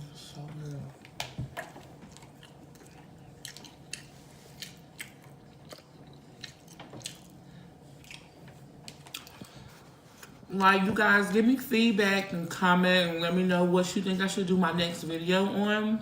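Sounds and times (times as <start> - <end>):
chewing with wet smacks: 0.6 - 10.6.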